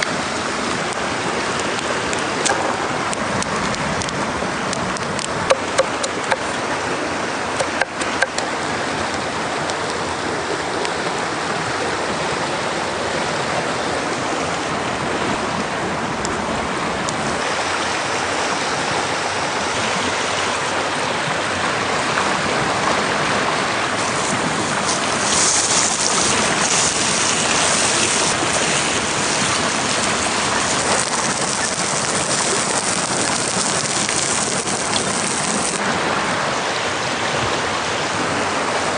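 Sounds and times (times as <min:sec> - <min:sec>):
rushing water: 0:00.0 - 0:38.9
bright hiss: 0:24.0 - 0:35.8.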